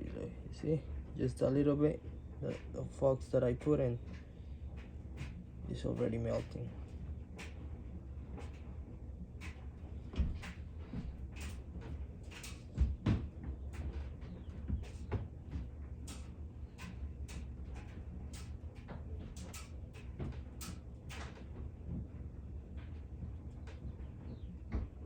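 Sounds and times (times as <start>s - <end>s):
low electrical hum: 0.0s - 25.0s
soldering flux crackling and popping: 8.4s - 22.1s.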